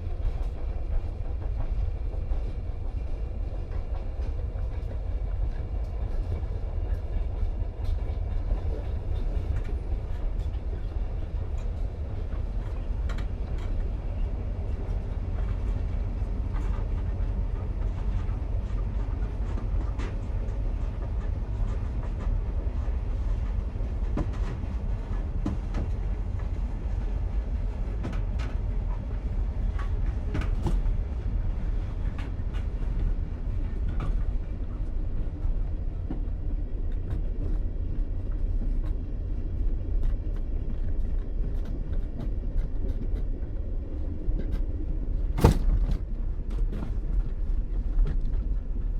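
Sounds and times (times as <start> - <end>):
train rumble: 0.0 - 48.9.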